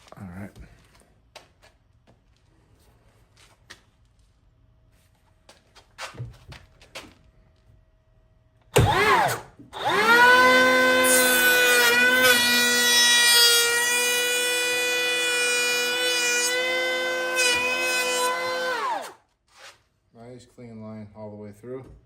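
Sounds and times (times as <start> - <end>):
electric planer whining: 8.8 - 19.2.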